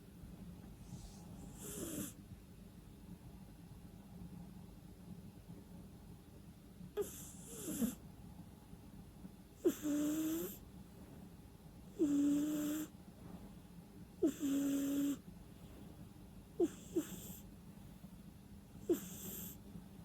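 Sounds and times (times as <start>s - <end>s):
cat snoring through nose: 0.8s - 2.2s, 7.0s - 8.0s, 9.6s - 10.6s, 12.0s - 12.9s, 14.2s - 15.2s, 16.6s - 17.4s, 18.8s - 19.6s.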